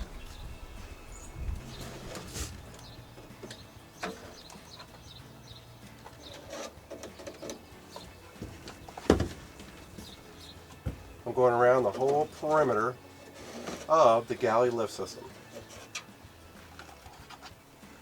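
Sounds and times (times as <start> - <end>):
scraper tool scraping glue: 13.3 - 13.9.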